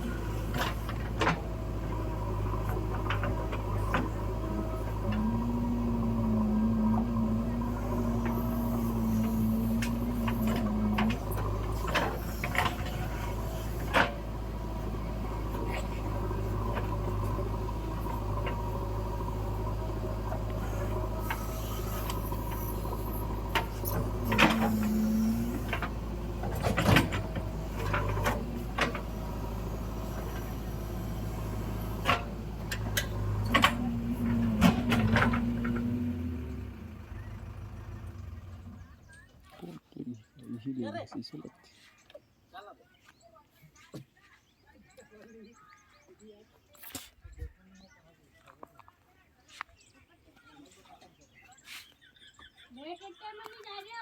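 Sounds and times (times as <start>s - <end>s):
diesel engine running: 0.0s - 39.5s
whining tone: 2.1s - 38.8s.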